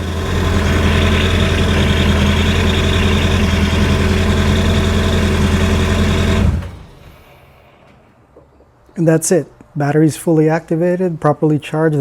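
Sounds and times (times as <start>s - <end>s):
jet ski engine idling: 0.0s - 7.3s.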